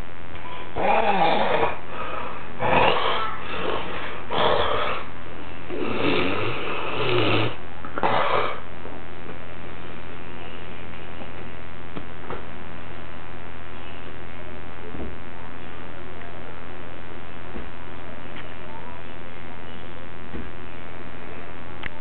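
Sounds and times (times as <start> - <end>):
steady background hum: 0.0 - 22.0
child snoring: 0.6 - 5.1, 5.7 - 8.6.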